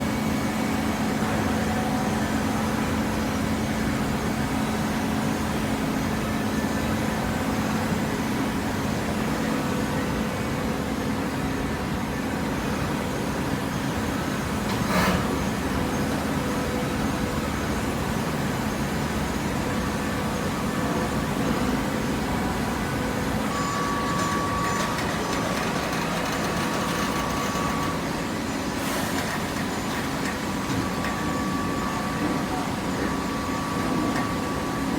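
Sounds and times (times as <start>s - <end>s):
thin steady whine: 0.0s - 34.9s
baling machine drone: 22.1s - 34.9s.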